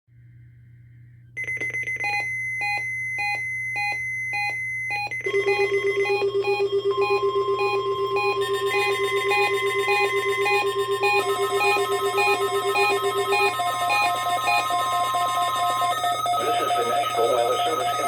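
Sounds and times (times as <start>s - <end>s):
pulsing alarm beeps: 1.4s - 18.0s
fast-pulsing electronic alarm: 5.2s - 18.0s
steady alert tone: 5.3s - 18.0s.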